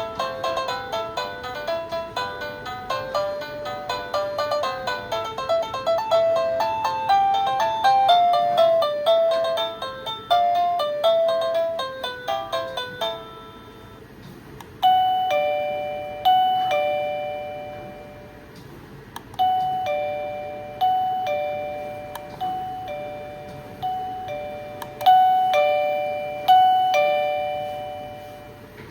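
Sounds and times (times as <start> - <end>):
electronic doorbell chime: 0.0 - 14.0, 14.8 - 18.4, 19.4 - 28.9.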